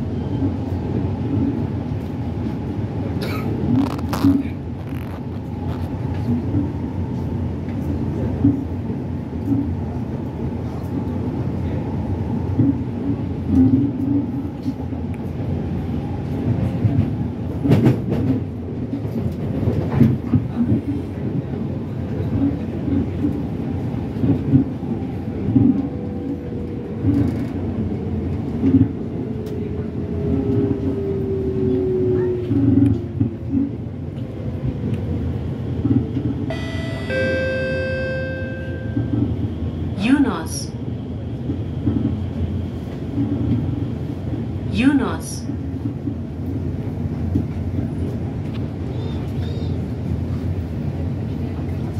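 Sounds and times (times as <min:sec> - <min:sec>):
train wheels rumbling on track: 0:00.0 - 0:51.9
two-note electronic chime: 0:36.5 - 0:39.1.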